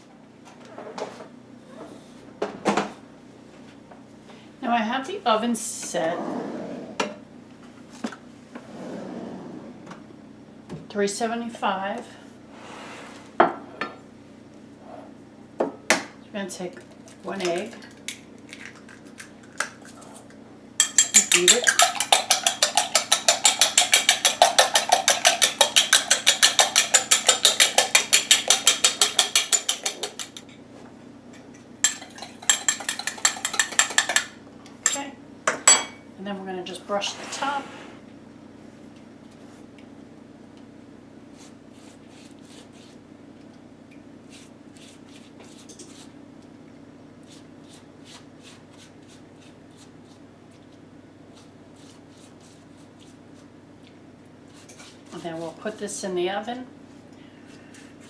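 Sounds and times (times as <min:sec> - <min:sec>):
steady low hum: 0:00.0 - 0:58.0
utensil beating egg in bowl: 0:20.8 - 0:30.5, 0:31.8 - 0:35.0.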